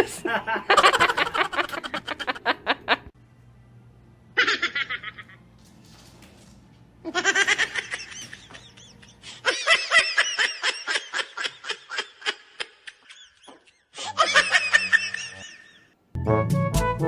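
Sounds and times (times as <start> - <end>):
high-pitched laughter: 4.4 - 5.4, 7.1 - 15.9.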